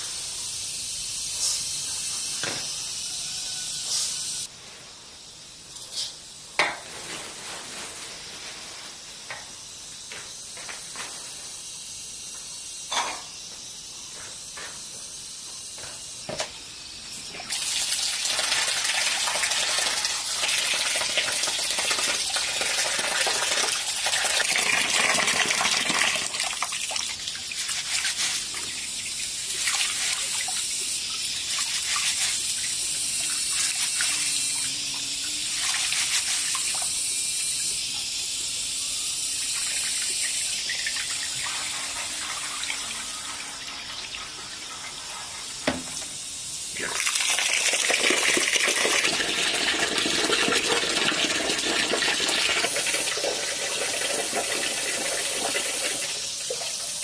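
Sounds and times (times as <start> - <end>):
tap water running and splashing: 17.4 - 38.2, 39.4 - 57.0.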